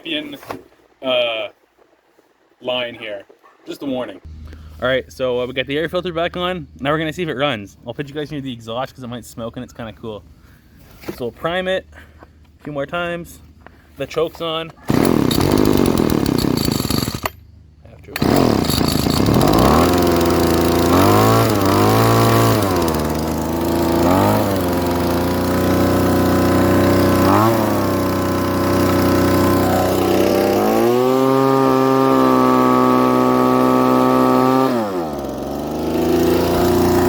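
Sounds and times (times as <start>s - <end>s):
leaf blower engine revving: 14.8s - 17.3s, 18.0s - 37.0s.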